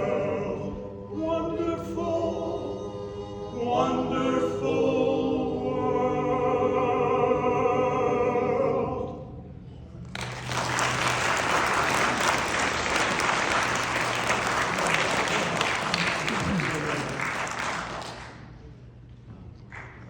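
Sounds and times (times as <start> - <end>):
vocal group singing a cappella: 0.0 - 9.5
audience applauding: 10.1 - 18.6.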